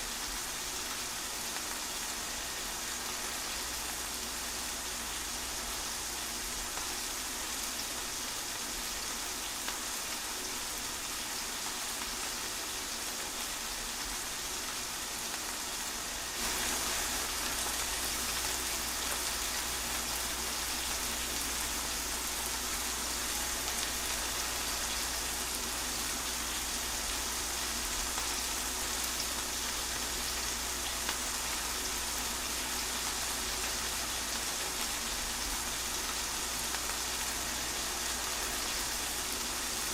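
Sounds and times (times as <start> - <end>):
rain pattering through trees: 1.5 - 39.9.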